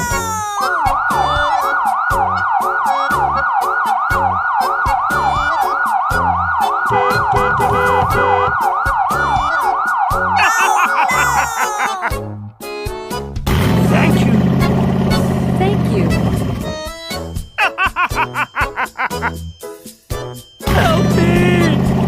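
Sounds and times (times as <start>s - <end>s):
background music with steady beat: 0.0s - 13.5s.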